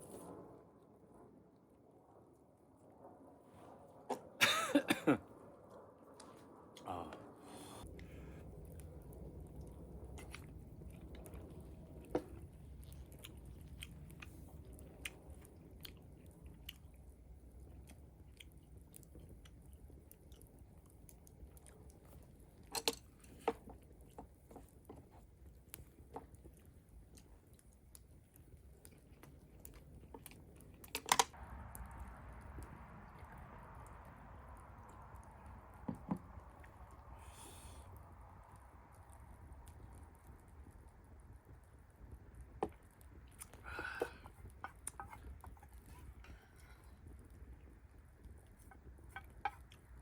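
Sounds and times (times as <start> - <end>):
low steady rumble: 0.0 - 24.9, 26.5 - 50.0
person chewing food: 10.1 - 17.0, 17.6 - 31.3, 42.7 - 47.6.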